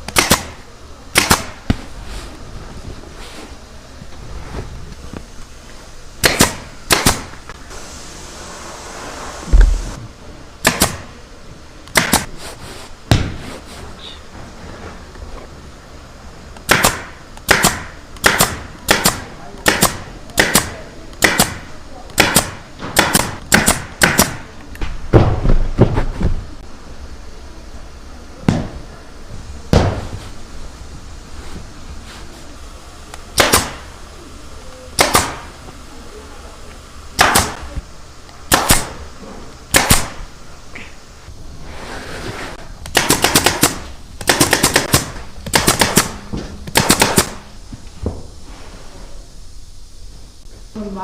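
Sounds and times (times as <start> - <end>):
staple gun firing: 0.1 - 1.5, 6.2 - 7.3, 10.6 - 11.1, 11.9 - 12.3, 16.6 - 24.4, 33.4 - 33.8, 35.0 - 35.4, 38.5 - 38.9, 39.7 - 40.2.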